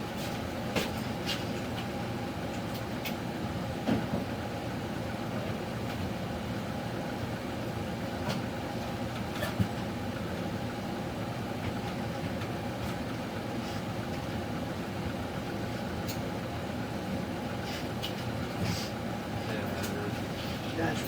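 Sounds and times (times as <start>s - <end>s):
steady mechanical hum: 0.0s - 21.0s.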